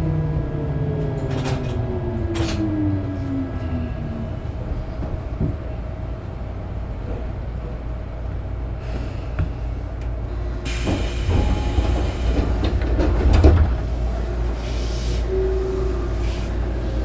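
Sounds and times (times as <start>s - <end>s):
train wheels rumbling on rails: 0.0s - 17.0s
clattering over track: 0.4s - 3.7s, 9.4s - 14.6s.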